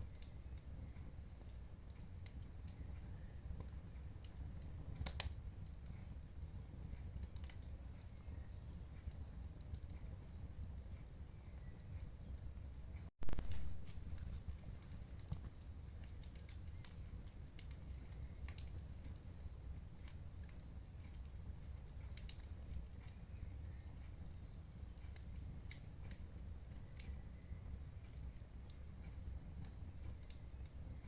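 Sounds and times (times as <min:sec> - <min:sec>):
fire crackling and popping: 0:00.0 - 0:31.0
low rumble of flames: 0:00.0 - 0:31.0.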